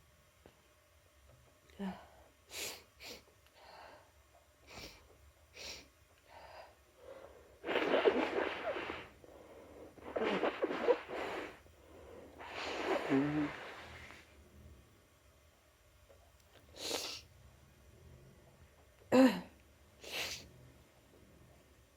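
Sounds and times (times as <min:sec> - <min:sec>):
person sneezing: 0:07.6 - 0:09.2, 0:12.4 - 0:14.1, 0:19.2 - 0:20.5
person sniffling: 0:07.6 - 0:11.6, 0:12.3 - 0:14.2, 0:16.8 - 0:17.3.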